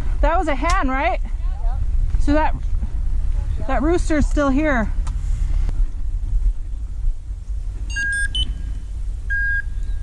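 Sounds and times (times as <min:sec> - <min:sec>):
wind rumble on microphone: 0:00.0 - 0:10.0
short electronic beeps: 0:07.9 - 0:08.7, 0:09.3 - 0:09.8.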